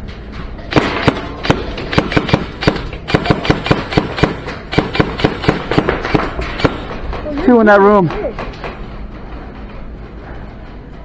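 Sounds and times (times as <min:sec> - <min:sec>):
airsoft guns firing: 0:00.7 - 0:07.5.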